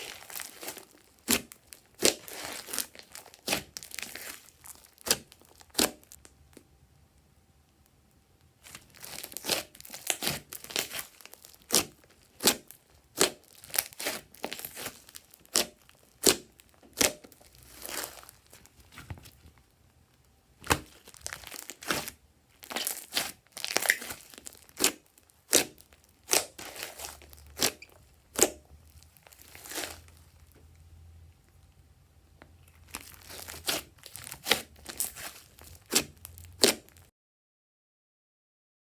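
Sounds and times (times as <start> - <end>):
slime squeezed by hand crackling: 0.0 - 6.3, 8.6 - 19.0, 20.6 - 30.5, 32.6 - 37.1.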